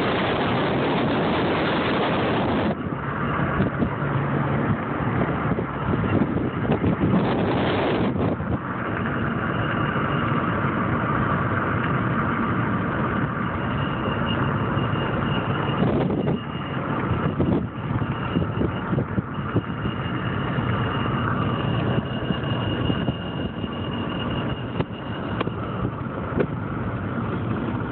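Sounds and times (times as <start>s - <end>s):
car running noise: 0.0s - 27.9s
high-pitched wheel squeak: 13.2s - 26.2s.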